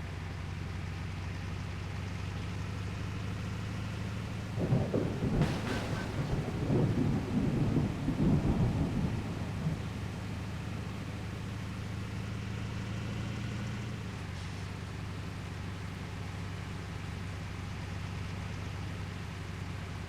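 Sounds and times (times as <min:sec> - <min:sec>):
truck engine droning: 0:00.0 - 0:20.0
irregular low rumbling: 0:04.5 - 0:11.3.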